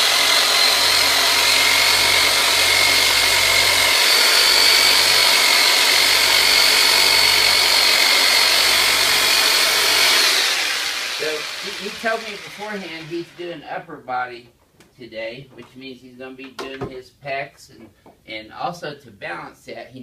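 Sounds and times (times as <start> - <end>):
electric massage device whining: 0.0 - 13.2.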